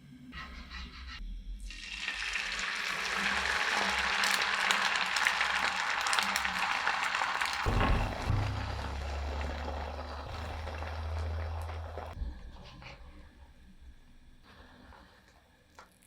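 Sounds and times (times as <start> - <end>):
omelette sizzling in a pan: 1.6 - 12.2.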